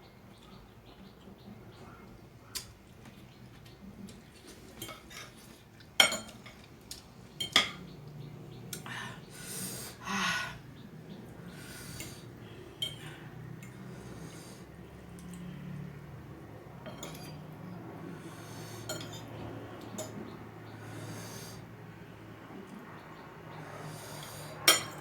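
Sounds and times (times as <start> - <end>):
metal utensil clinking on bowl: 4.8 - 5.4, 6.0 - 6.6, 12.8 - 13.1, 16.8 - 17.5, 18.8 - 19.3, 19.9 - 20.2, 24.6 - 25.0.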